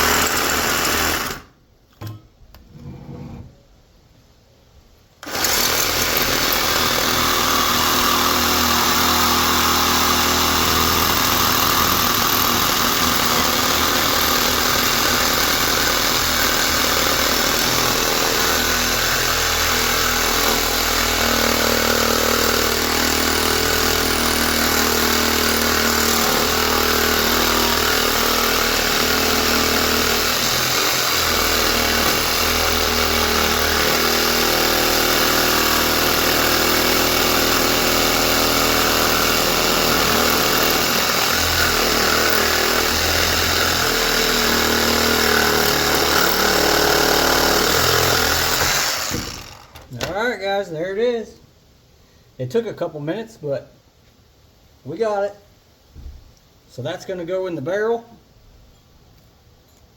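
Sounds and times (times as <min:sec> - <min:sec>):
reciprocating saw cutting metal: 0:05.2 - 0:49.8.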